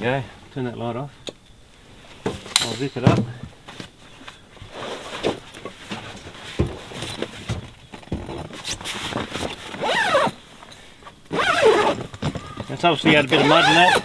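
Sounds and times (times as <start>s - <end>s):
tent fabric rustling: 3.6s - 7.6s, 8.3s - 10.7s, 11.3s - 14.0s
tent zipper: 8.6s - 10.4s, 11.3s - 12.1s, 13.1s - 14.0s.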